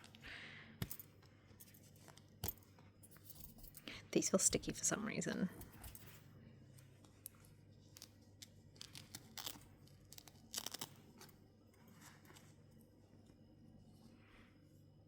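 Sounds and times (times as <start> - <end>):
plastic packaging crinkles: 7.9 - 11.2.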